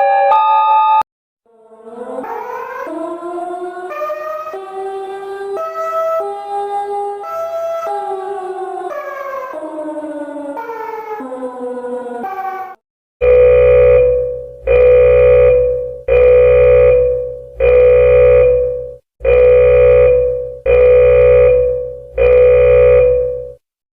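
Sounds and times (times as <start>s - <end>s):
buzzy alarm beeps: 13.2s - 23.6s.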